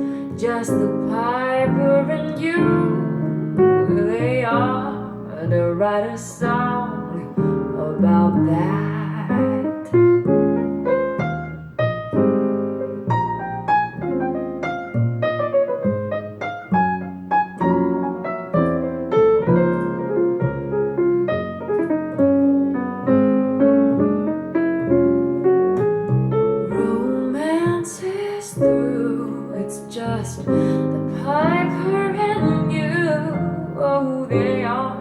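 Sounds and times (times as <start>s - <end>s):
piano solo through loudspeakers: 0.0s - 35.0s.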